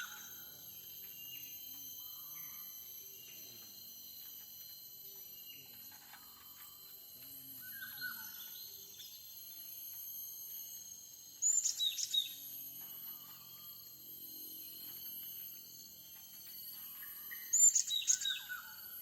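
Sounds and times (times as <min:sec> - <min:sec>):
faint steady high hum: 0:00.0 - 0:19.0
small songbirds chirping: 0:16.9 - 0:18.8.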